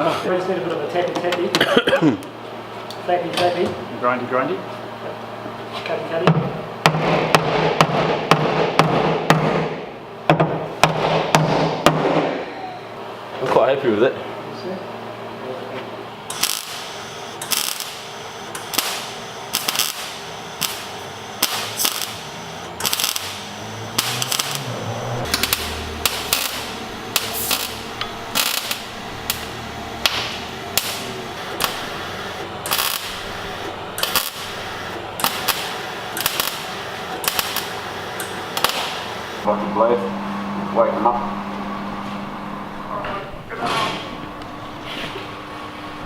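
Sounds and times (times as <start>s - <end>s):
steady background hum: 0.0s - 46.0s
hammer tapping on sheet metal: 6.3s - 9.7s, 10.3s - 12.1s.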